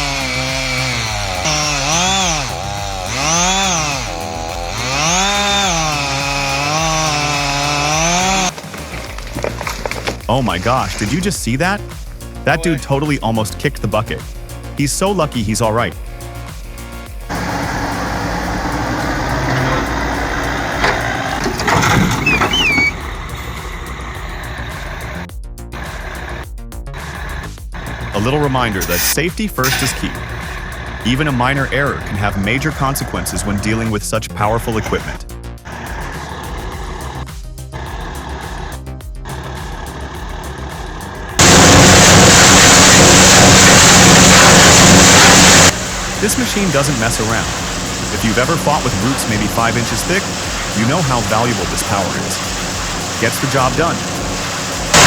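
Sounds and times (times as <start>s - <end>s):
wood chipper running: 0.0s - 11.8s, 17.3s - 25.1s, 39.3s - 55.0s
knocking and crunching: 6.2s - 11.3s
sliding squeal: 21.1s - 23.1s.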